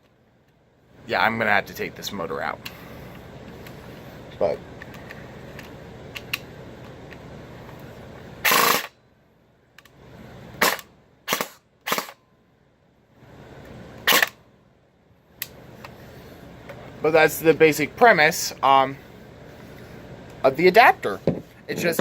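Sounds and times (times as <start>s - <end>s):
airsoft gun firing: 8.4s - 8.9s, 10.6s - 12.2s, 14.0s - 14.4s.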